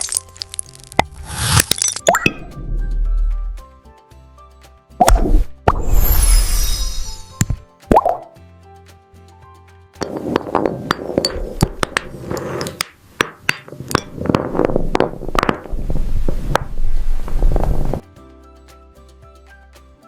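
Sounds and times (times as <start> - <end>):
glass crunching and cracking: 0.0 - 2.1.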